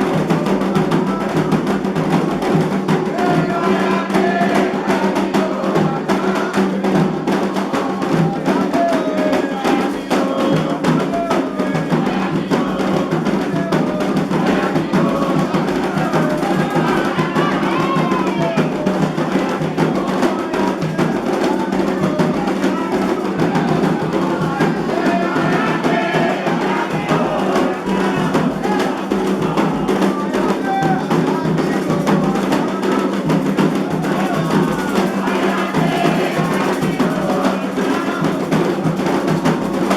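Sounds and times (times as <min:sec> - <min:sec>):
hand drums playing: 0:00.0 - 0:39.9
sharp clicking percussion: 0:00.0 - 0:39.9
voices singing: 0:00.0 - 0:39.9.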